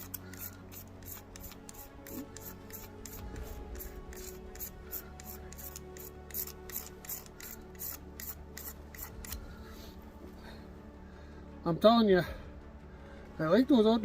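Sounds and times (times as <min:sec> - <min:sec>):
striker scraping ferro rod: 0:00.0 - 0:09.5.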